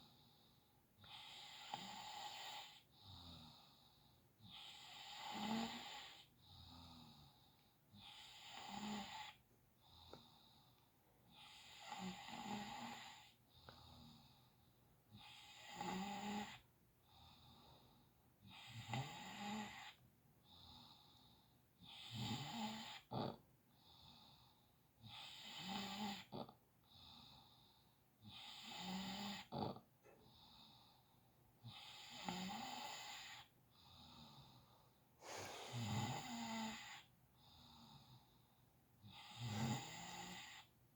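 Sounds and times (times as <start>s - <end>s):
faint snoring: 1.0s - 10.6s, 11.3s - 14.4s, 15.1s - 17.8s, 18.4s - 31.0s, 31.6s - 38.3s, 39.0s - 40.8s
sharp breath catches: 35.2s - 36.1s.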